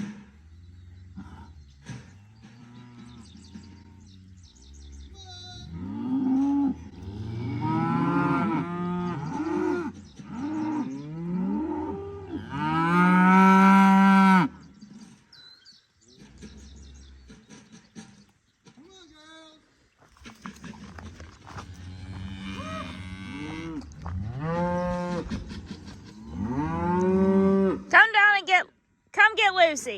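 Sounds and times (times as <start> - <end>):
cattle mooing: 5.5 - 14.5, 21.5 - 27.9.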